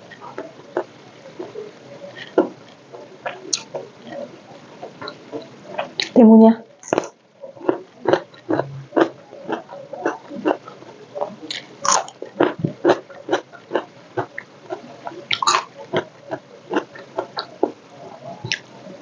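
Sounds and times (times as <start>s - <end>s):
chewing and crunching crisp food: 6.8s - 17.8s, 18.4s - 19.0s.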